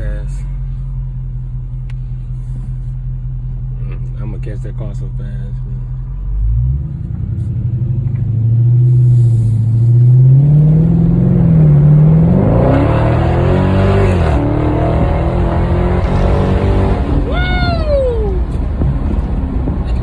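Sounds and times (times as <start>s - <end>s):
car engine accelerating hard: 6.0s - 20.0s.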